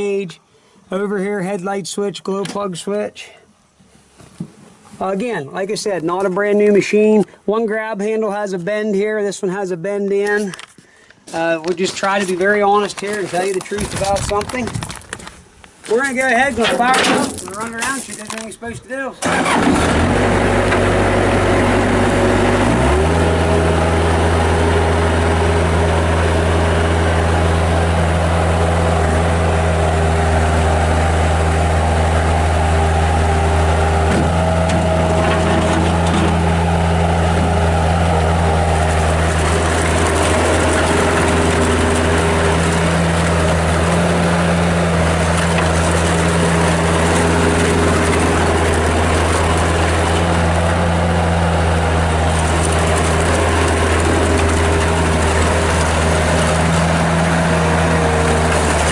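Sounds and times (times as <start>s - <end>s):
diesel engine running: 19.2s - 58.9s.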